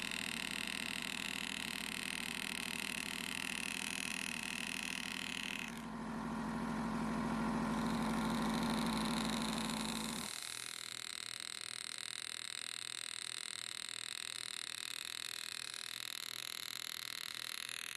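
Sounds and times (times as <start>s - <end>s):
engraving handpiece buzzing: 0.0s - 5.9s, 7.5s - 17.9s.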